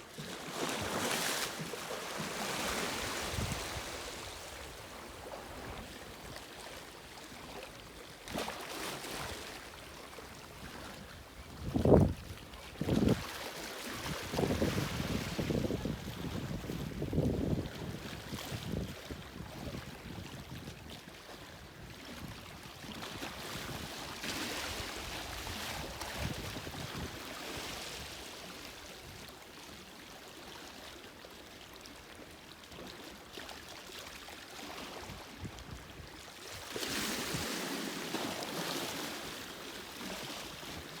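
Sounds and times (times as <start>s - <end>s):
sea waves washing on shore: 0.0s - 7.8s.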